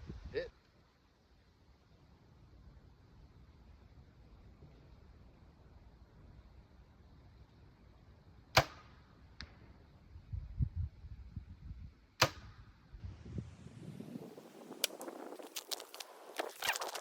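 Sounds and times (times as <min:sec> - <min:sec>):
arrow hitting target: 0:08.5 - 0:09.6, 0:12.2 - 0:12.7
bowstring snap: 0:12.2 - 0:12.6.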